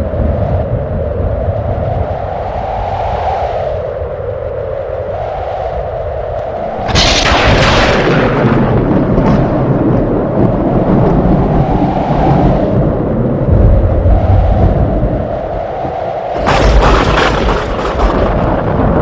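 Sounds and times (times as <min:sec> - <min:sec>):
storm background: 0:00.0 - 0:19.0
thunderclap rumbling: 0:06.4 - 0:19.0.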